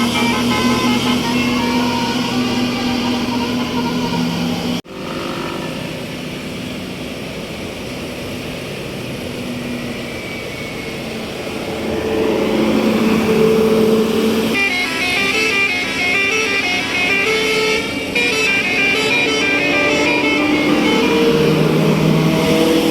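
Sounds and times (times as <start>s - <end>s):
multi-tone horn melody: 0.0s - 4.8s, 11.6s - 22.9s
steady bus horn tone: 0.0s - 4.9s, 10.5s - 22.9s
passing bus road noise: 0.0s - 22.9s.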